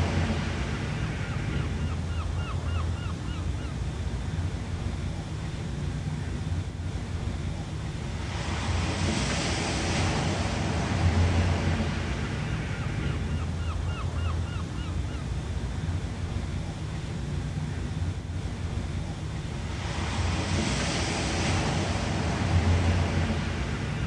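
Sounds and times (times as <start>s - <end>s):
low rumble of surf: 0.0s - 24.0s
ocean waves breaking: 0.0s - 24.0s
bird calling: 0.9s - 3.8s, 12.4s - 15.3s.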